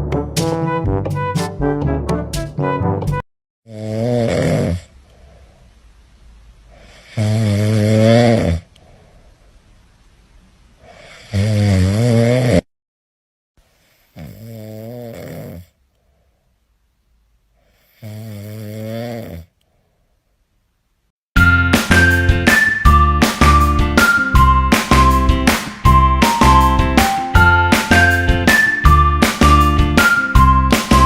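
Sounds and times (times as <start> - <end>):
person snoring: 3.7 - 5.6, 6.8 - 9.1, 10.8 - 12.7, 14.0 - 15.8, 17.6 - 19.6.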